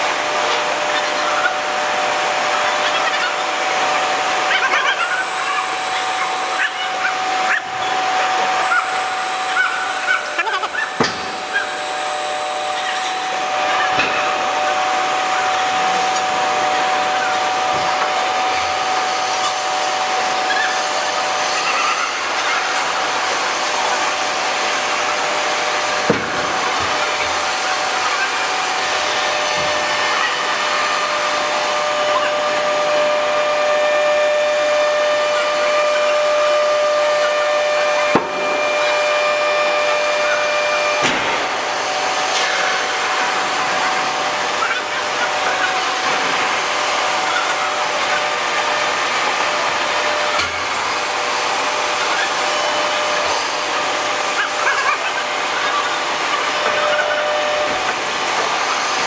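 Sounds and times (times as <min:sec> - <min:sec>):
machinery whine: 0:00.0 - 0:21.3.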